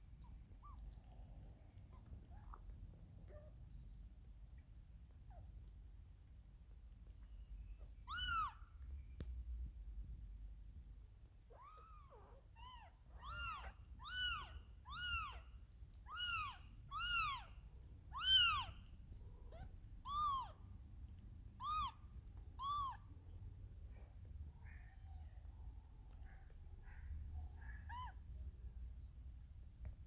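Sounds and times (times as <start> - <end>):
kitten meowing: 8.0 - 8.6, 11.5 - 15.5, 16.1 - 18.8, 19.5 - 20.6, 21.6 - 22.0, 22.6 - 23.1.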